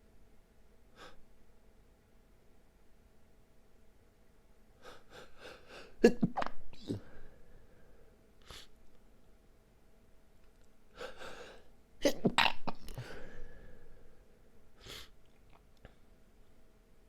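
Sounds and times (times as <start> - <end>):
person breathing: 4.8 - 6.0, 6.9 - 8.8, 10.9 - 11.7, 12.9 - 15.2
person stifled sneezing: 5.7 - 7.2, 12.0 - 13.3.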